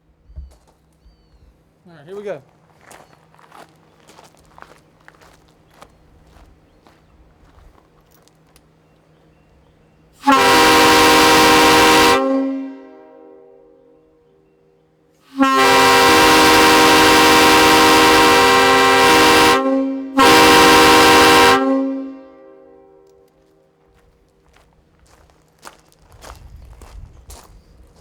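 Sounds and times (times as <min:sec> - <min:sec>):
air train horn blasts: 0:10.2 - 0:14.4, 0:15.2 - 0:23.8.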